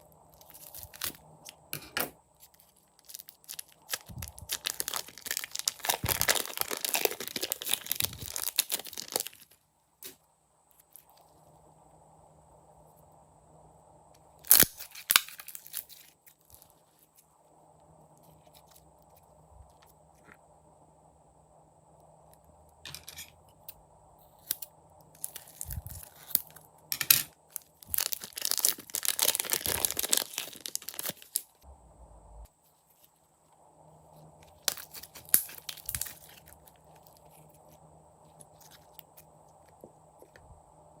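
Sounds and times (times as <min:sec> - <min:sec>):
slime crackling and crunching: 0:00.3 - 0:01.2, 0:02.6 - 0:09.6, 0:14.5 - 0:16.8, 0:25.2 - 0:26.6, 0:27.5 - 0:31.5, 0:34.4 - 0:37.7.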